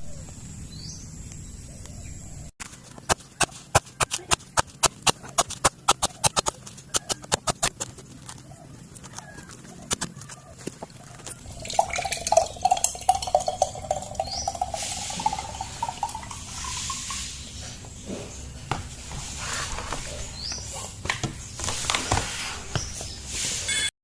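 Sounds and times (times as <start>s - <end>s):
liquid gurgling into a container: 11.4s - 17.4s.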